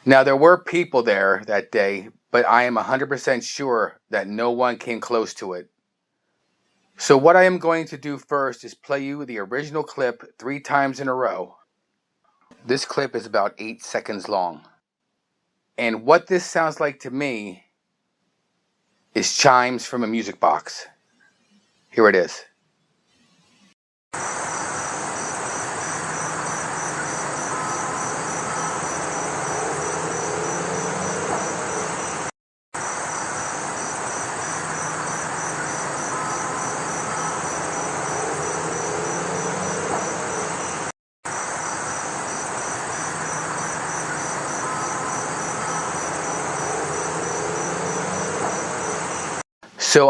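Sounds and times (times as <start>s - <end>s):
crickets and insects chirping: 24.2s - 49.4s.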